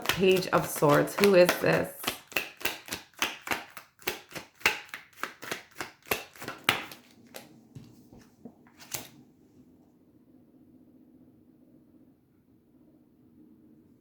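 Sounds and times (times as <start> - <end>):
cards being shuffled: 0.0 - 9.2.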